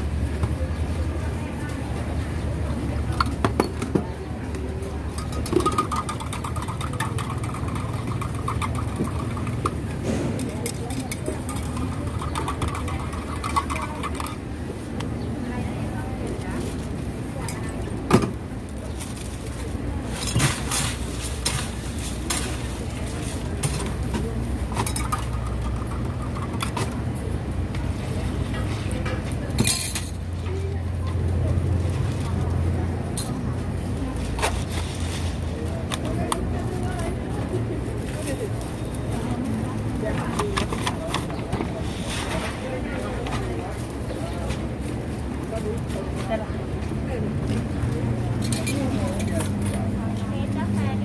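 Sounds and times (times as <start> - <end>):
low engine rumble: 0.0 - 51.0
passing traffic hum: 0.0 - 51.0
utensils and cups clinking: 5.0 - 14.5, 23.2 - 27.1, 29.5 - 30.5, 48.4 - 49.8.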